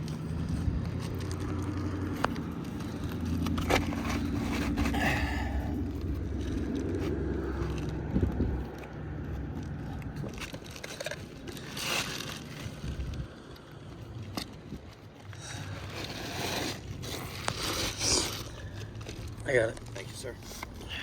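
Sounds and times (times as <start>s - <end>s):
vehicle engine running: 0.0s - 16.2s.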